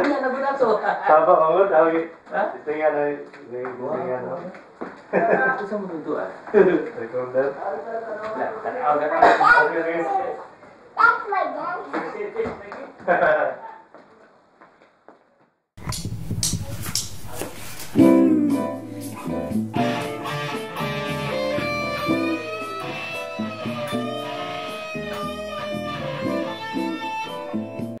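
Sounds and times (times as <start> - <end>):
backing track: 17.9 - 28.0
electric guitar through amplifier: 18.0 - 28.0.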